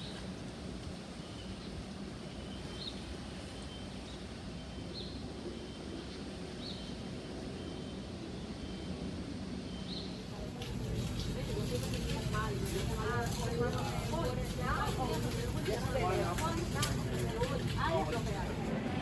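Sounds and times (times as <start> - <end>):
low background rumble: 10.1 - 19.0.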